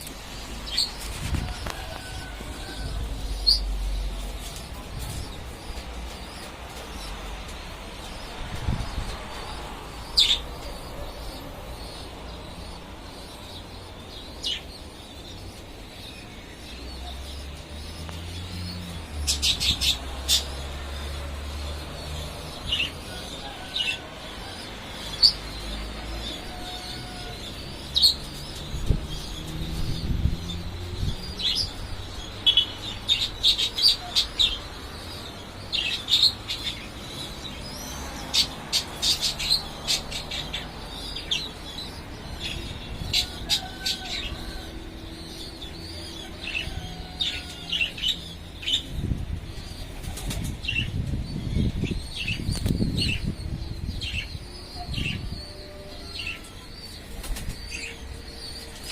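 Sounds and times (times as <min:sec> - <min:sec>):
birds chirping: 0:00.0 - 0:58.9
wind rumble on microphone: 0:00.5 - 0:06.6, 0:08.3 - 0:10.3, 0:28.6 - 0:33.0, 0:48.6 - 0:55.7.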